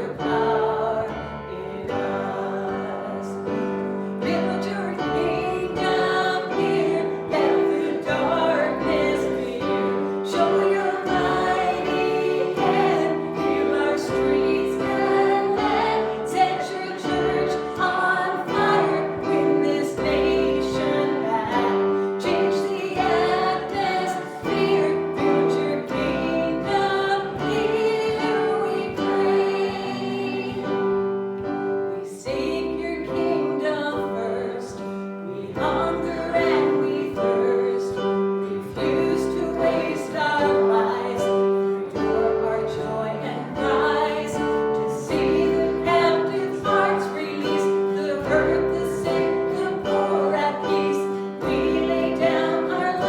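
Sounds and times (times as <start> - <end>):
group singing a hymn: 0.0 - 53.0
instrumental accompaniment: 0.0 - 53.0.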